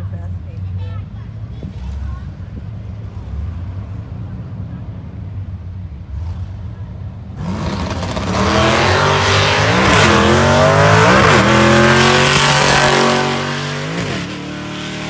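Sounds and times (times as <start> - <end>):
car engine accelerating hard: 6.0 - 15.0.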